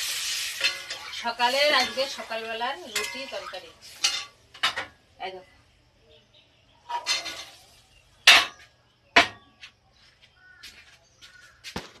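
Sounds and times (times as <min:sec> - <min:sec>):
utensils scraping a pot: 0:00.0 - 0:04.9, 0:06.9 - 0:08.6
utensils clinking: 0:00.6 - 0:04.9, 0:06.9 - 0:07.6.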